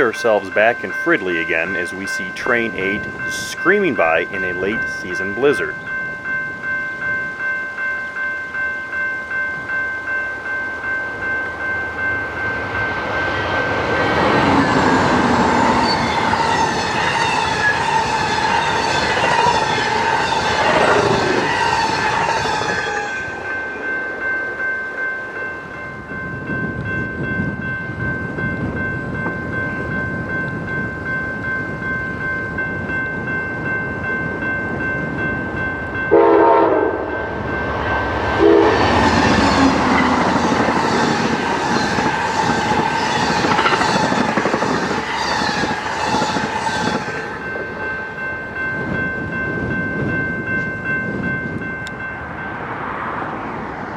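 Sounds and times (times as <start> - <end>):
train cars rumbling over rails: 0.0 - 8.2, 10.8 - 24.7, 25.7 - 53.9
train horn: 36.1 - 37.3, 38.4 - 39.0.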